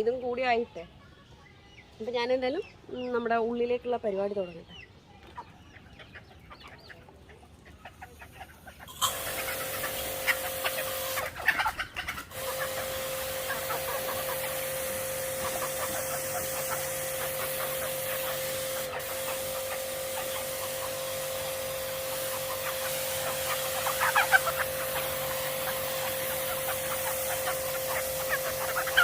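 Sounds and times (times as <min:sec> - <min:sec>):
chickens clucking: 0:00.0 - 0:29.0
water spray gun hissing: 0:08.9 - 0:11.6, 0:12.2 - 0:29.0.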